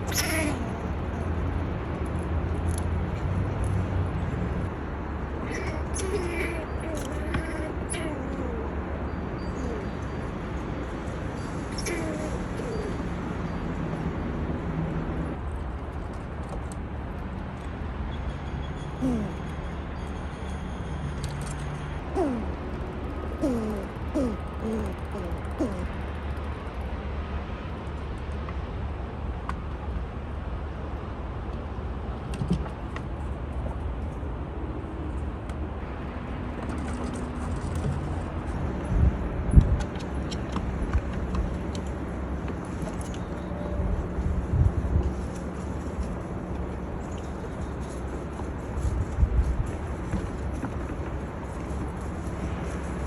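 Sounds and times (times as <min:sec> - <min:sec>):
squirrel falling cry: 0:19.0 - 0:19.4, 0:22.2 - 0:22.6, 0:23.4 - 0:25.9
squirrel growling low: 0:19.0 - 0:19.5, 0:22.2 - 0:26.0.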